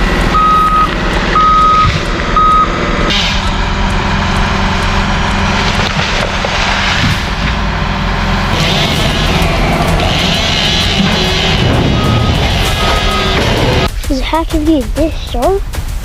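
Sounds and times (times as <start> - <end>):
engine running: 0.0 - 16.0
backup alarm beeping: 0.3 - 2.8, 11.5 - 13.9.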